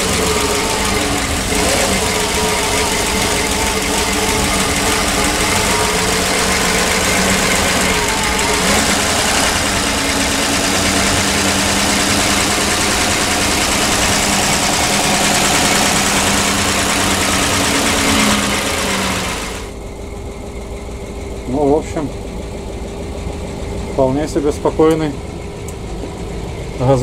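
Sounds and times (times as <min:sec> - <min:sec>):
bus engine idling: 0:00.0 - 0:27.0.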